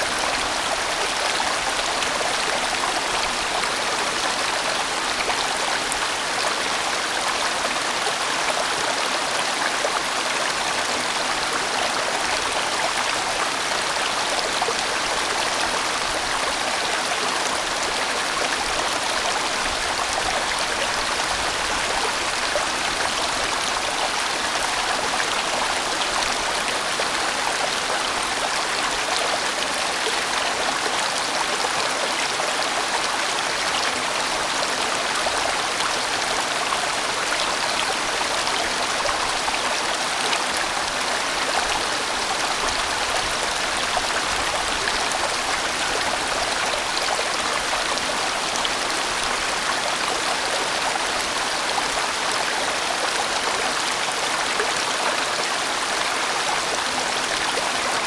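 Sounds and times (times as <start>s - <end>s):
stream flowing: 0.0s - 58.0s.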